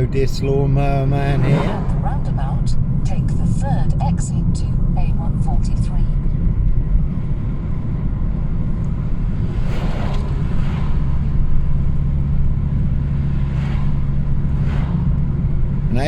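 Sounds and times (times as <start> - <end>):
car engine and road noise: 0.0 - 16.0
rush of noise: 8.6 - 16.0.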